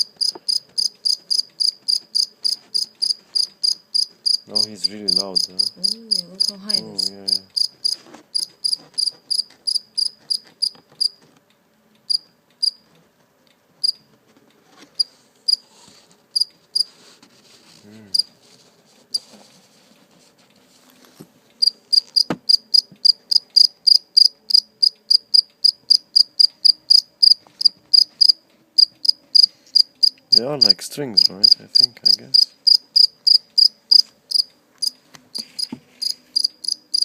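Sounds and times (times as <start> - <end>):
cricket chirping: 0.0 - 11.2, 12.1 - 12.8, 16.4 - 16.9, 21.6 - 35.0, 35.6 - 37.0.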